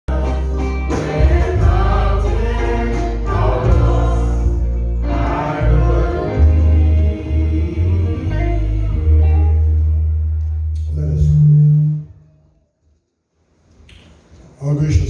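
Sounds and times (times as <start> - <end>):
group of voices singing gospel: 0.0 - 9.8
strong bass line: 0.1 - 12.1.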